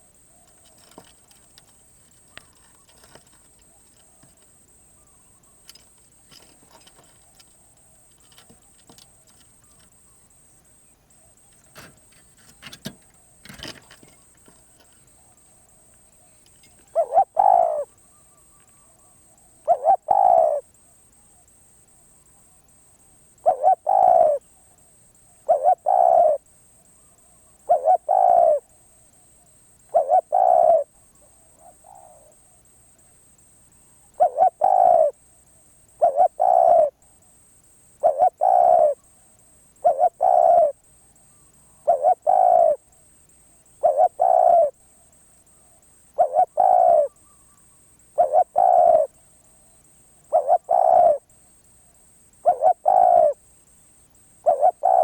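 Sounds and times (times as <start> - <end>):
dove cooing: 0.0 - 10.2, 11.2 - 20.7, 23.3 - 24.6, 25.2 - 26.5, 27.3 - 28.8, 29.8 - 33.0, 34.0 - 35.2, 35.9 - 37.0, 38.0 - 43.0, 43.7 - 44.8, 45.5 - 51.3, 52.4 - 53.4, 54.4 - 55.0.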